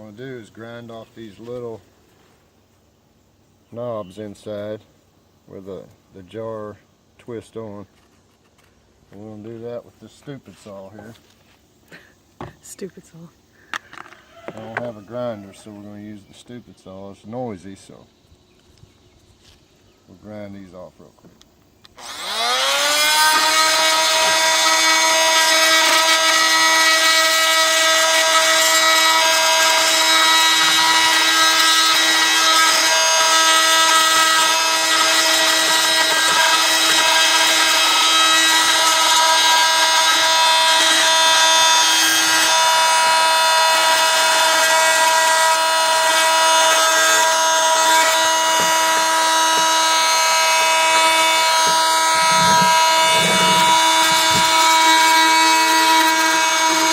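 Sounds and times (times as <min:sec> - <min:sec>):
electric saw grinding plastic: 0:22.0 - 0:56.9.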